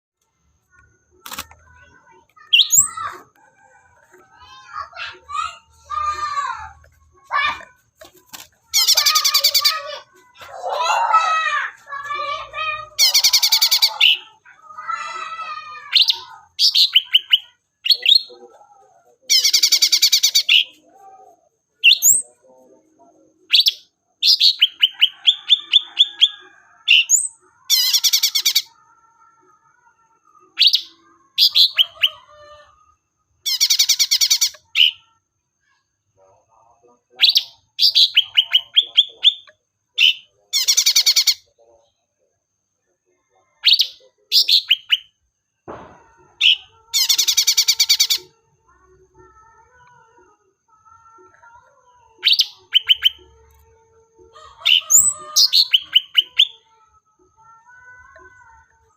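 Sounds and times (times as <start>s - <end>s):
bird singing fast trills: 2.4s - 3.1s, 13.0s - 14.4s, 15.8s - 18.3s, 19.3s - 20.7s, 23.5s - 28.8s, 33.4s - 35.1s, 37.2s - 41.4s, 46.4s - 48.4s, 52.2s - 53.3s, 54.6s - 56.7s.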